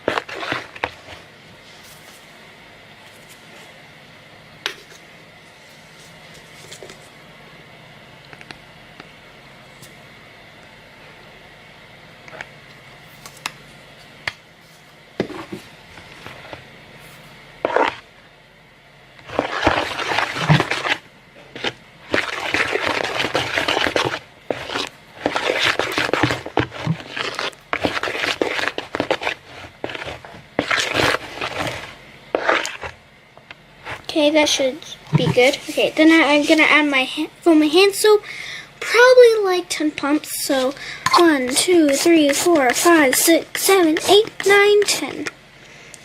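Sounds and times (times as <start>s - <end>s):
thick mix squishing in bowl: 0.0s - 2.4s, 12.2s - 18.2s, 19.2s - 37.1s, 39.7s - 45.4s.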